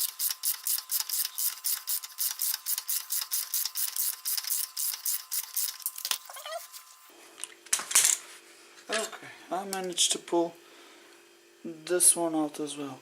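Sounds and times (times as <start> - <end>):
ratchet wrench clicking: 0.0 - 6.1.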